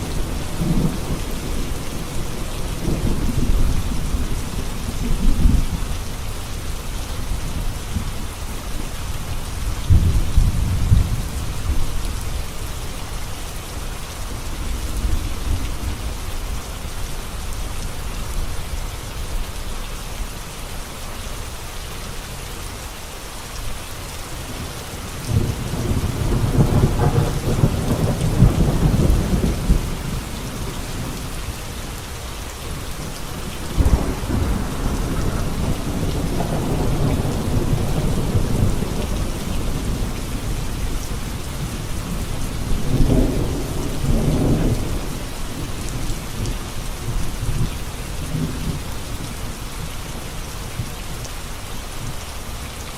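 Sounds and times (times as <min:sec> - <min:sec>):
heavy rain on a road: 0:00.0 - 0:52.9
thunder rumbling: 0:09.9 - 0:12.2, 0:24.5 - 0:31.3, 0:32.7 - 0:49.6.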